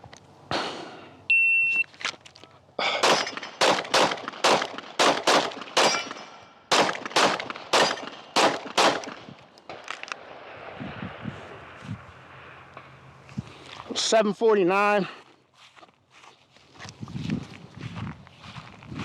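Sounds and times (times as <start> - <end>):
pistol shots: 2.9 - 10.4
bullets ringing on steel: 5.8 - 6.5, 7.7 - 8.2.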